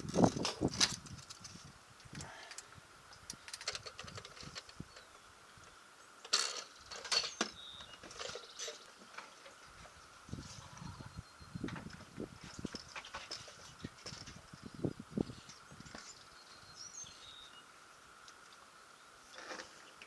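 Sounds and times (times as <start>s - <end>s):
hand tools clicking and clattering: 3.3s - 5.1s, 6.3s - 9.6s.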